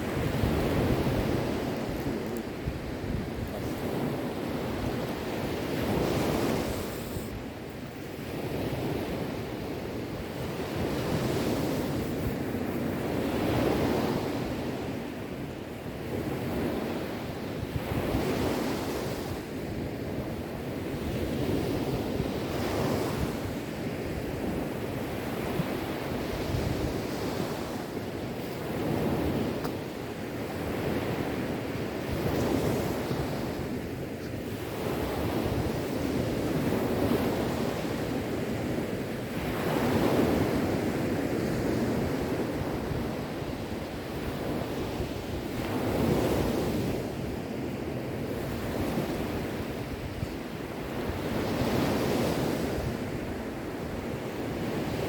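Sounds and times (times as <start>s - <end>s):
wind noise: 0.0s - 55.0s.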